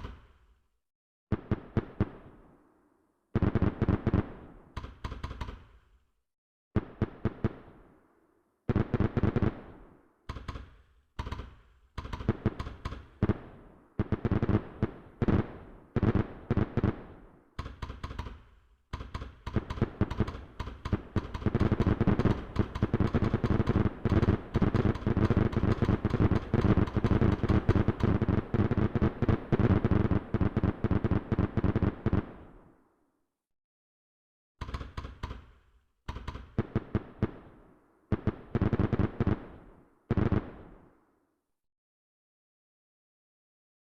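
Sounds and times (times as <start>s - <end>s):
fireworks bangs and crackles: 1.3s - 2.6s, 3.3s - 5.8s, 6.8s - 8.0s, 8.7s - 32.7s, 36.1s - 41.0s.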